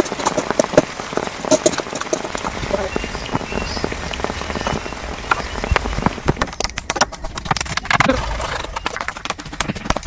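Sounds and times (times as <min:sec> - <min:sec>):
heavy rain falling: 0:00.0 - 0:06.8
raindrops tapping on a surface: 0:00.4 - 0:08.0.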